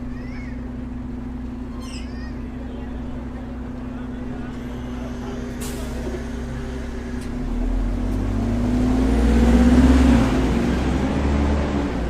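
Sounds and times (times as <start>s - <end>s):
vehicle engine accelerating: 2.8s - 12.0s.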